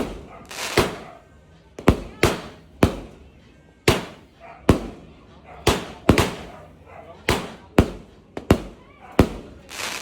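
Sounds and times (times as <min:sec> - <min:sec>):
firework hiss and crackle: 0:00.0 - 0:01.0, 0:09.3 - 0:10.0
firework bangs: 0:00.0 - 0:01.2, 0:01.8 - 0:03.2, 0:03.9 - 0:10.0.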